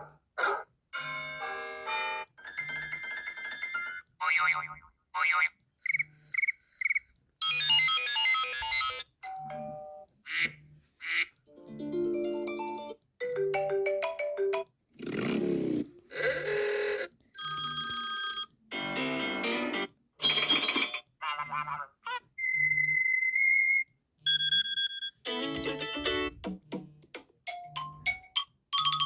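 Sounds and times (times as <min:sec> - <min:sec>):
phone ringtones and alert tones: 0:01.0 - 0:04.8, 0:05.9 - 0:10.0, 0:17.4 - 0:21.8, 0:22.4 - 0:26.4, 0:27.5 - 0:29.0.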